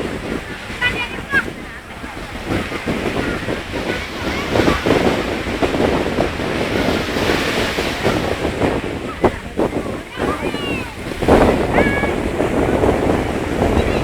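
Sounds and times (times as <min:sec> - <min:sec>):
surf and waves: 0:00.0 - 0:14.0
wind buffeting microphone: 0:00.0 - 0:14.0.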